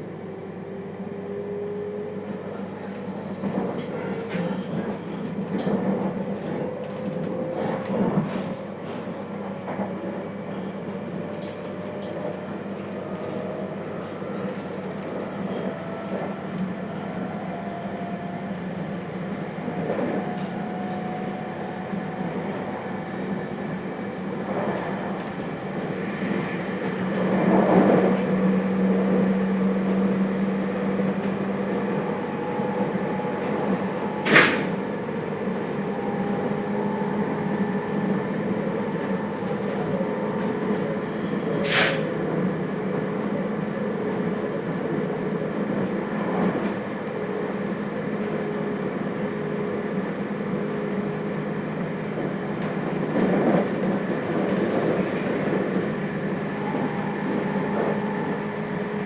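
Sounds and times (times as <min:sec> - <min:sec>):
train rolling noise: 0:00.0 - 0:59.0
electric train motor hum: 0:10.6 - 0:41.4, 0:47.2 - 0:59.0.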